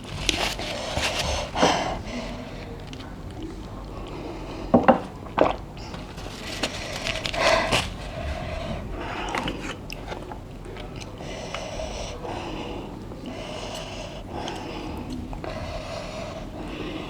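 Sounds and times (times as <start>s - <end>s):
drawn-out mouth sounds: 0.0s - 17.0s
chewing with wet mouth clicks: 2.6s - 4.4s, 9.2s - 11.6s, 13.0s - 15.6s.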